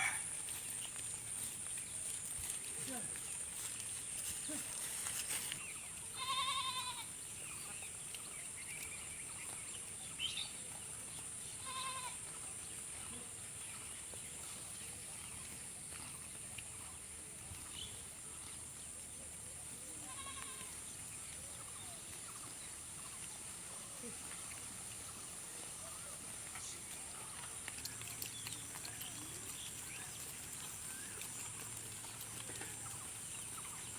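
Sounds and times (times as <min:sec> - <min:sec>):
steady high-pitched hiss: 0:00.0 - 0:33.9
goat bleating: 0:06.2 - 0:07.1, 0:11.6 - 0:12.2, 0:20.0 - 0:20.7.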